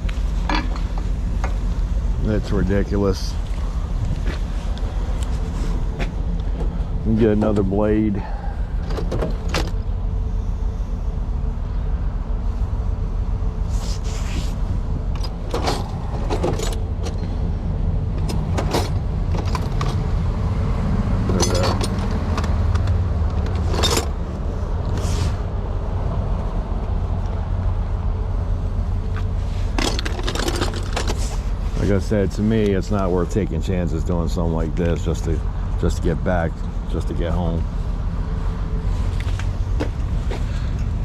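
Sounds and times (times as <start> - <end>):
vehicle engine idling: 0.0 - 41.0
hand tools clicking and scraping: 21.3 - 24.2, 29.2 - 32.0.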